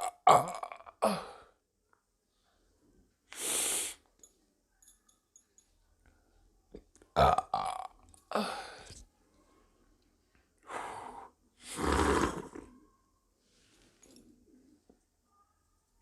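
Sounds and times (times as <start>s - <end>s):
woman belching: 0.0s - 1.3s, 7.2s - 8.6s.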